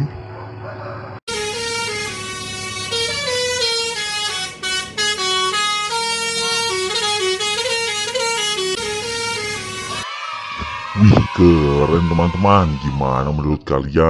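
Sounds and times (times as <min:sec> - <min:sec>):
musical truck horn tune: 0:01.3 - 0:10.1.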